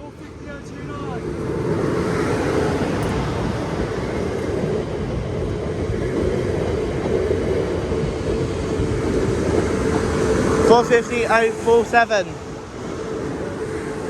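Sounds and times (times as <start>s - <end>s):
constant hum: 0.0s - 14.0s
electric train passing: 0.0s - 14.0s.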